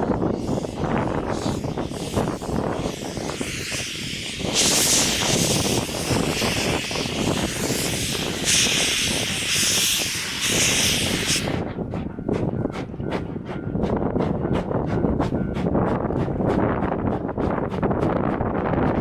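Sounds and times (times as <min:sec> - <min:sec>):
steam locomotive hissing steam: 0:00.0 - 0:12.0.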